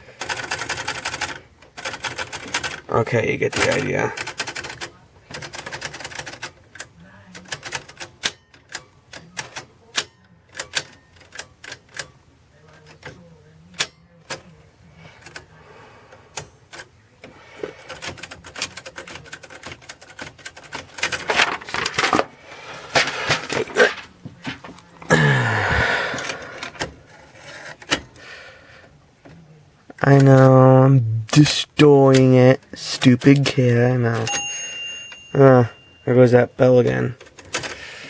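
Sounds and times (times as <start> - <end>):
typewriter keys clacking: 3.5 - 12.2, 17.7 - 22.2, 36.8 - 37.9
typewriter carriage ringing clatter: 18.0 - 24.7, 34.1 - 37.9.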